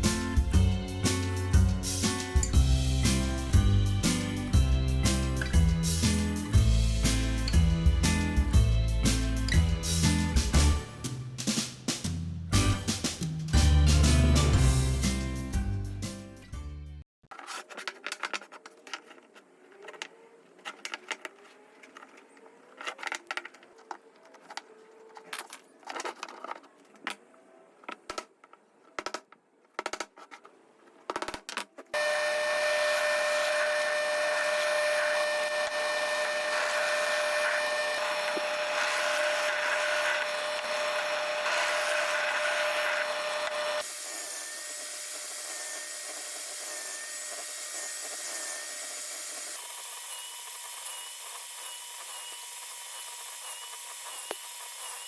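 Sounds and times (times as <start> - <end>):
power tool whining on wood: 32.0 - 55.0.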